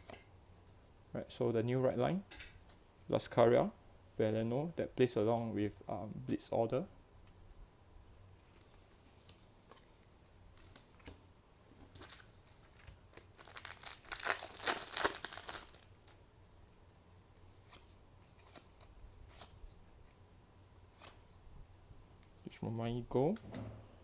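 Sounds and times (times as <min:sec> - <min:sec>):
wrapper tearing and crinkling: 0:11.9 - 0:16.2.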